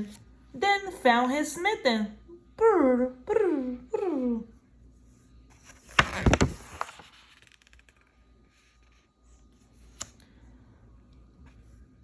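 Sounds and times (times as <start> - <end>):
paper page rustling: 5.5 - 10.1.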